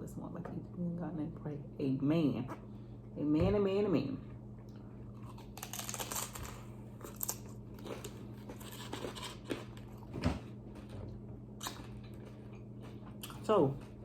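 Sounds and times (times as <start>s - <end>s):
crunchy chewing: 4.7s - 10.1s, 11.6s - 14.0s.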